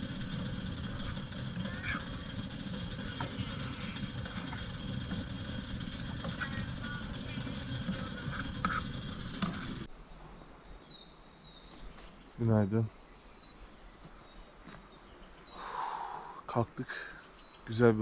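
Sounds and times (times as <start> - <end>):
campfire crackling: 0.0 - 9.9.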